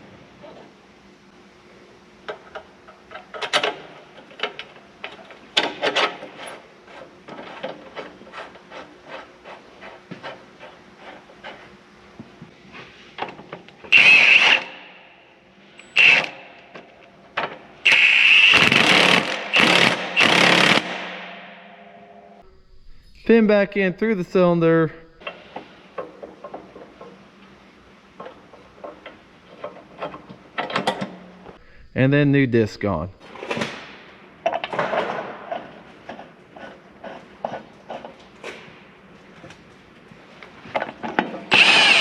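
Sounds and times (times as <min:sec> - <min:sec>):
power tool running: 0:13.9 - 0:14.8, 0:15.8 - 0:16.4, 0:17.8 - 0:21.4, 0:41.5 - 0:42.0.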